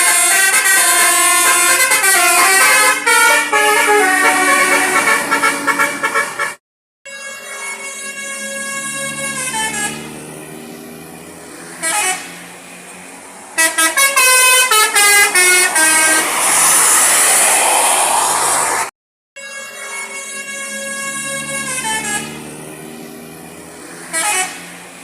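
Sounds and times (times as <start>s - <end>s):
musical air horn playing tunes: 0.0s - 10.6s, 11.6s - 12.4s, 13.6s - 16.4s, 19.4s - 24.7s
loud rushing noise: 11.3s - 18.9s.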